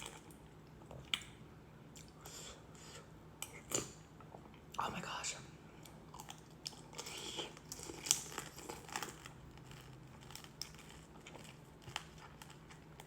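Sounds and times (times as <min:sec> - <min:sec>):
soft crinkling with small clicks: 0:07.6 - 0:13.0.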